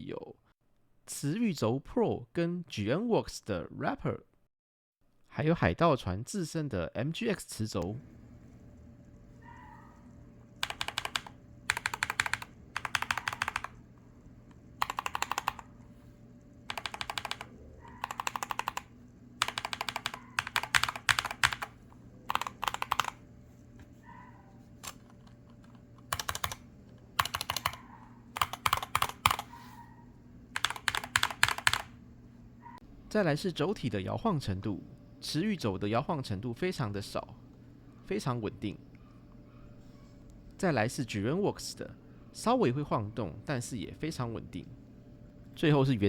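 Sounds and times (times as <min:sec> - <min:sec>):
keyboard typing: 0:09.6 - 0:15.9, 0:16.6 - 0:23.2, 0:24.8 - 0:29.6, 0:30.5 - 0:32.0.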